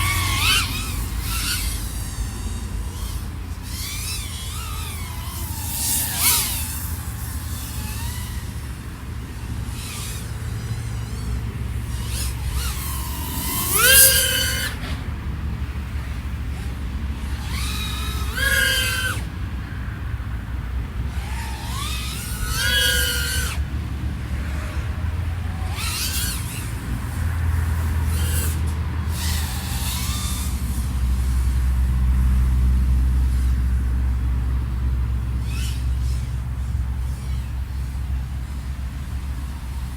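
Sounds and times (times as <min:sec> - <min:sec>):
drone motors humming and whining: 0:00.0 - 0:39.9.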